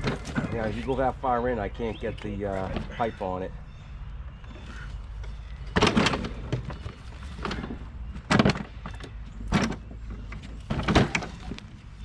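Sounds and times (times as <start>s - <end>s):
metal clunking against metal: 5.7s - 11.8s.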